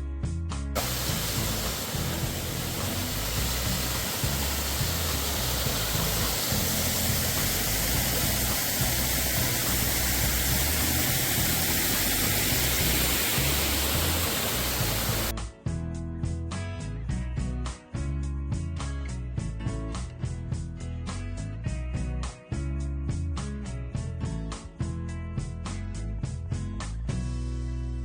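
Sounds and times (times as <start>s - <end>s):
water rushing: 0.8s - 15.3s
background music: 0.8s - 26.2s.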